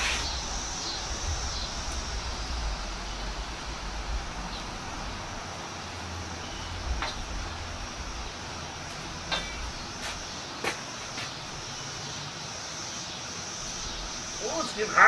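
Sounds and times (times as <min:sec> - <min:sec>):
wind rumble on microphone: 0:00.0 - 0:09.9
steady high hiss: 0:00.0 - 0:15.0.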